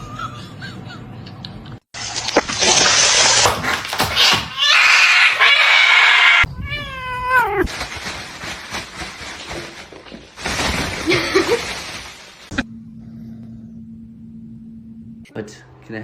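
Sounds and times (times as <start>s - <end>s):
cat meowing: 4.6s - 7.7s.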